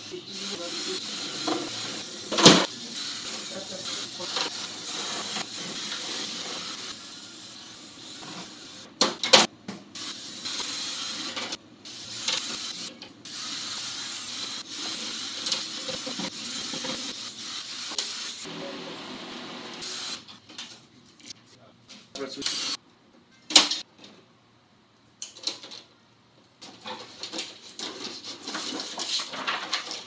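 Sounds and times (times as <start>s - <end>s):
clatter of tv being dismantled: 26.6s - 30.0s.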